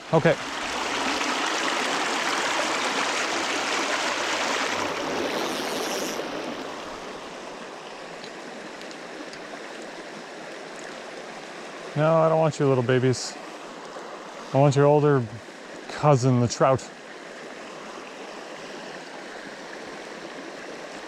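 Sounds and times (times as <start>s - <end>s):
creek water rushing over rocks: 0.0s - 14.7s.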